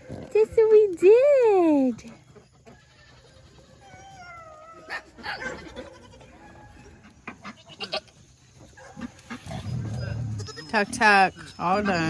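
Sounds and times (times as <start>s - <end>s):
goat bleating: 5.6s - 6.4s, 7.4s - 8.2s, 9.9s - 10.8s.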